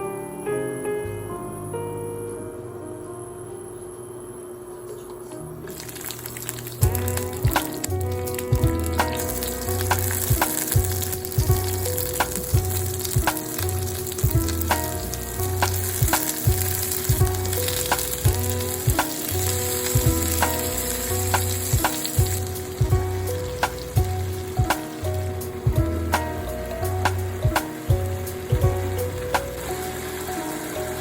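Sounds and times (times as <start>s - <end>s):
vegetables sizzling in a pan: 5.7s - 31.0s
background music with a beat: 6.8s - 31.0s.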